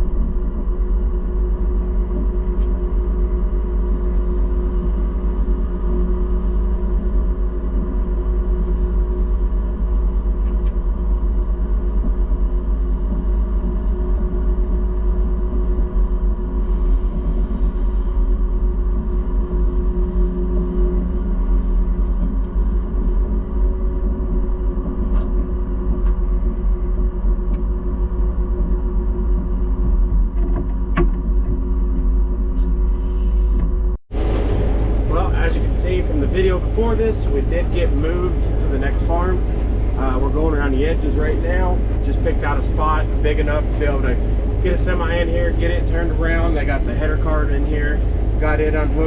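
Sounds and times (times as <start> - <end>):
combine harvester running: 34.1 - 49.0.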